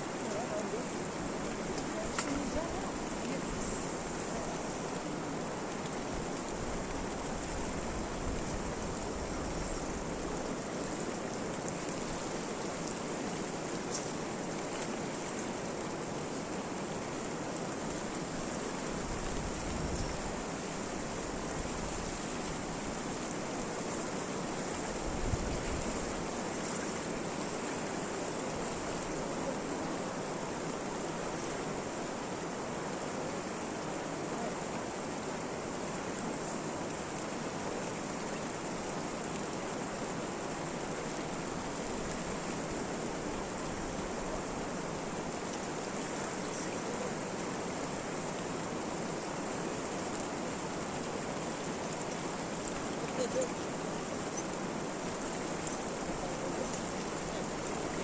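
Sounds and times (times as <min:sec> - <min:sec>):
water rushing: 0:00.0 - 0:58.0
faint ticks: 0:01.7 - 0:02.4.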